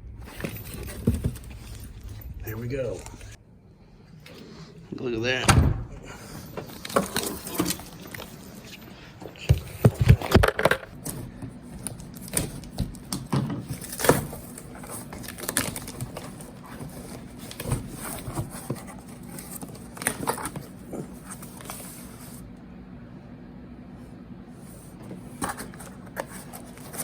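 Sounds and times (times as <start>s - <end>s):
packaging rustling and crinkling: 6.5s - 8.9s, 9.8s - 22.4s, 25.1s - 27.0s.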